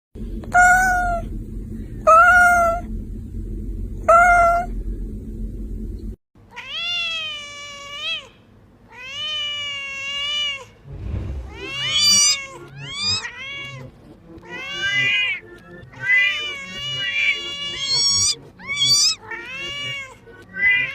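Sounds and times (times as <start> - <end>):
cat meowing: 0.5 - 1.2, 2.1 - 2.8, 4.1 - 4.7, 6.5 - 10.8, 11.5 - 20.9.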